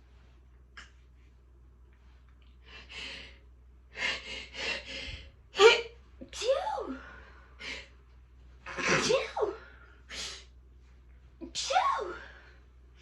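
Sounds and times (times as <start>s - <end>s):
woman sneezing: 8.7s - 10.5s.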